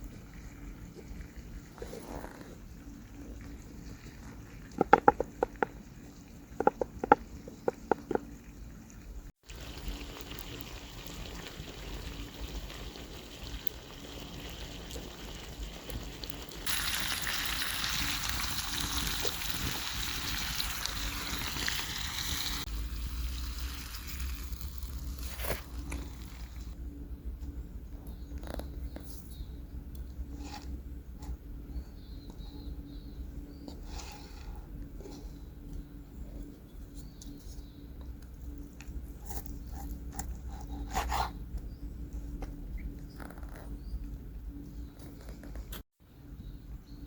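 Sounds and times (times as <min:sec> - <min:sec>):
skillet sizzling hiss: 0:16.7 - 0:25.3.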